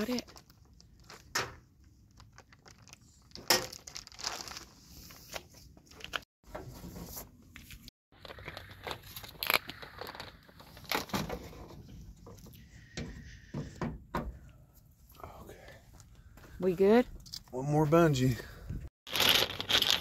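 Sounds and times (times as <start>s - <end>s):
plastic tarp crinkling: 2.1s - 6.2s, 8.1s - 11.6s, 19.1s - 20.0s.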